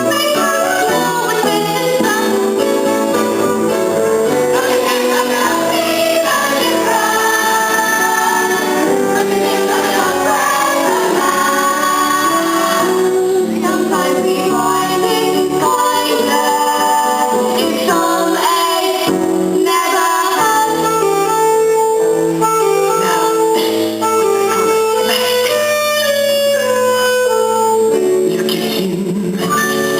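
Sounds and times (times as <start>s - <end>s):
young performers singing: 0.0s - 21.8s
instrumental accompaniment: 0.0s - 29.9s.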